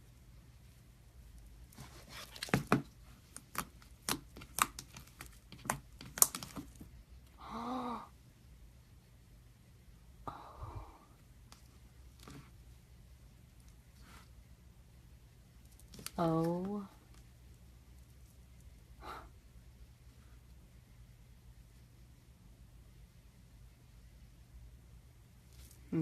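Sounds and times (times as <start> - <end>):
soft rustle: 0.0 - 7.0, 11.4 - 14.5, 25.3 - 26.0.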